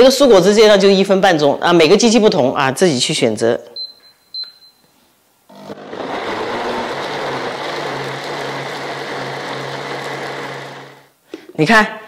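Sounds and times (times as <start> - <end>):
high-speed blender running: 5.5 - 11.1.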